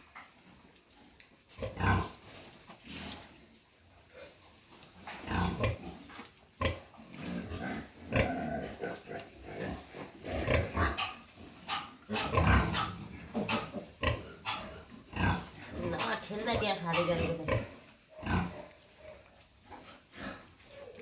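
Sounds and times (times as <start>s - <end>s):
pigs grunting: 1.6s - 2.2s, 5.2s - 6.0s, 6.6s - 21.0s.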